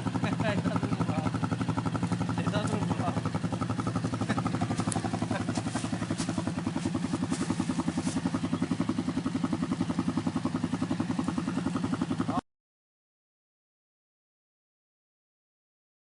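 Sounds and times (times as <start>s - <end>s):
atv engine idling: 0.0s - 12.4s.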